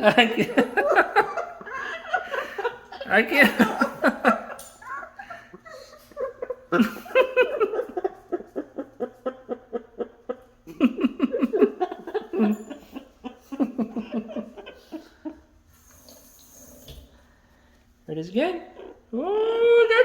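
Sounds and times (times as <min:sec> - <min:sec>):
hearty laughter: 0:00.0 - 0:15.5.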